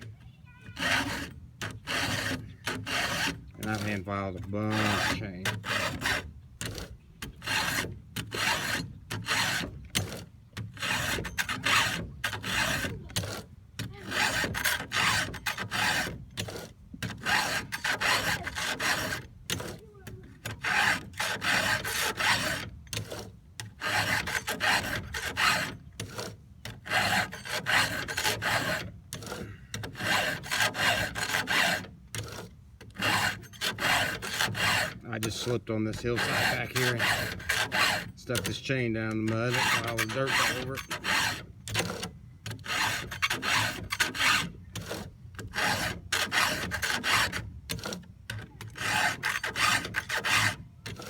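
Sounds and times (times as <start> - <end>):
file rasping on chainsaw chain: 0.6 - 51.0.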